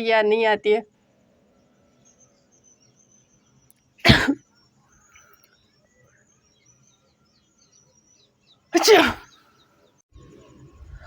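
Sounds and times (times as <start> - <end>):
woman sneezing: 4.1 - 4.4, 8.8 - 9.3.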